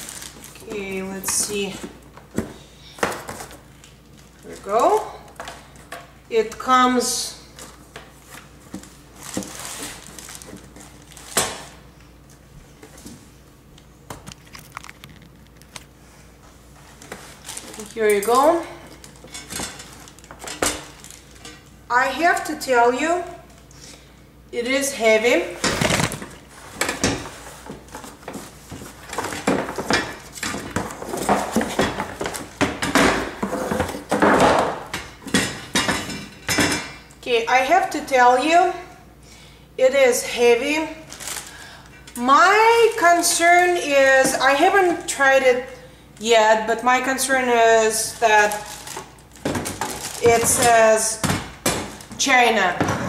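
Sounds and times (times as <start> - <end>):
packaging rustling: 0.0 - 0.8, 8.7 - 11.5, 16.9 - 18.2, 19.0 - 21.4, 41.1 - 41.6, 48.4 - 50.7
packaging crinkling and rustling: 0.0 - 1.5, 7.6 - 11.7, 14.2 - 15.9, 16.9 - 18.3, 18.9 - 21.6, 25.7 - 32.6, 41.1 - 41.6, 48.1 - 50.8.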